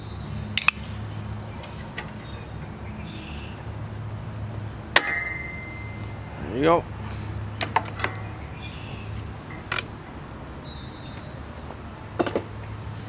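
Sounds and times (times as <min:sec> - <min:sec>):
low steady hum: 0:00.0 - 0:12.8
metal tools clinking: 0:04.9 - 0:06.4, 0:07.6 - 0:08.4.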